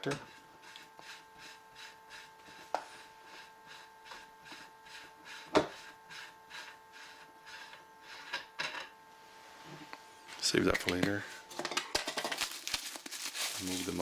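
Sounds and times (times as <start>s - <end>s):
soft rubbing strokes: 12.6s - 14.0s.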